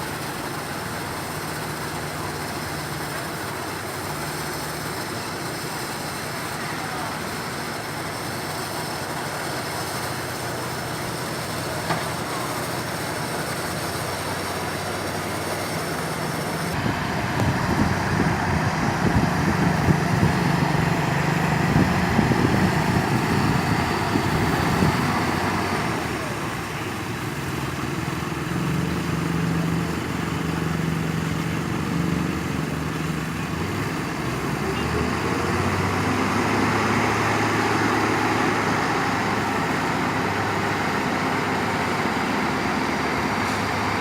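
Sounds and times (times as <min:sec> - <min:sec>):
heavy diesel engines running: 0:00.0 - 0:44.0
rough low rumble with drone: 0:16.0 - 0:34.8.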